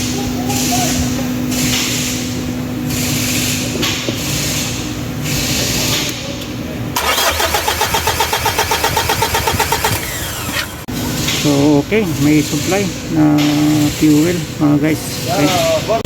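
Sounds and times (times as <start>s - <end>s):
diesel engine cranking: 6.9s - 11.6s.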